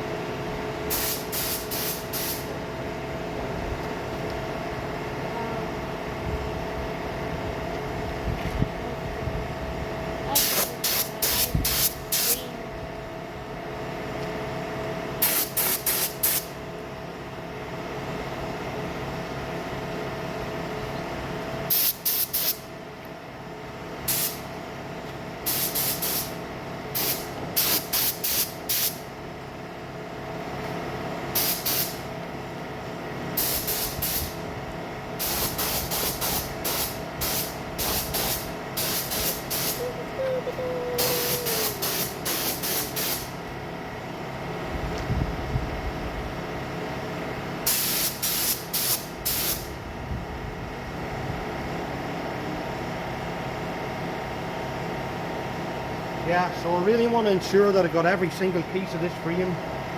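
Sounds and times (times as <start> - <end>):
steady machine hum: 0.0 - 59.9
spray gun hissing bursts: 0.9 - 2.5, 10.4 - 12.4, 15.2 - 16.5, 21.7 - 22.6, 24.1 - 24.4, 25.4 - 26.4, 27.0 - 29.0, 31.4 - 32.0, 33.4 - 34.4, 35.2 - 39.9, 41.0 - 43.4, 47.7 - 49.7.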